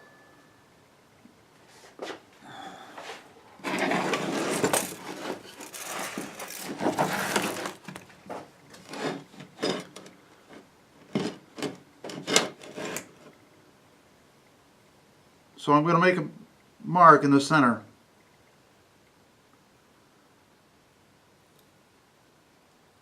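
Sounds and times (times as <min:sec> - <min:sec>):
objects scraping on a workbench: 0:03.0 - 0:13.4.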